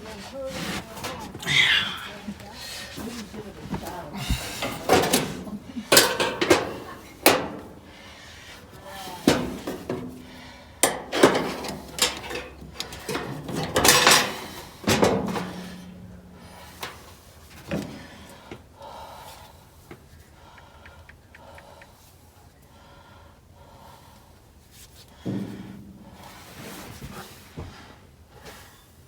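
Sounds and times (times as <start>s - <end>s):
tools knocking and clicking: 4.3s - 7.7s, 10.8s - 16.1s.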